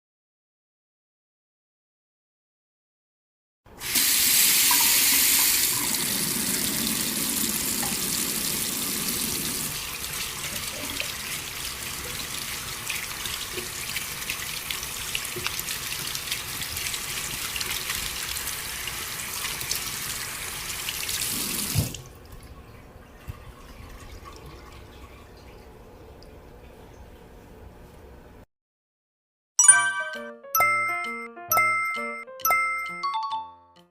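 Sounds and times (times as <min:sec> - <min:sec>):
tap water running: 0:03.8 - 0:27.2
water dripping and draining: 0:03.8 - 0:27.6.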